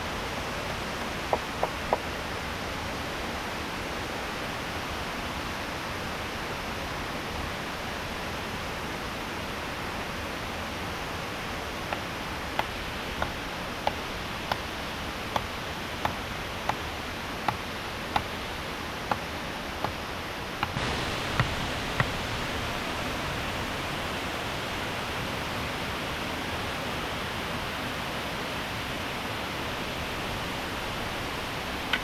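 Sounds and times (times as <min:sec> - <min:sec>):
falling water rushing: 0:09.6 - 0:32.0
sharp knocks: 0:20.6 - 0:22.2.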